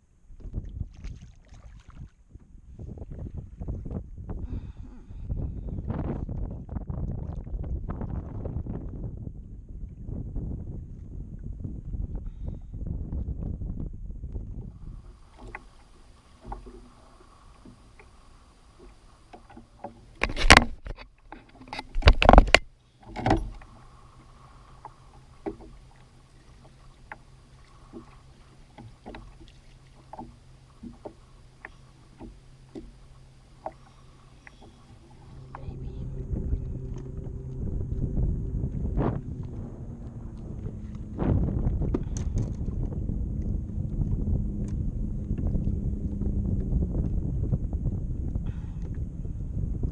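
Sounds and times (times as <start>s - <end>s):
water slaps on kayak hull: 0.4s - 2.4s, 14.3s - 49.1s.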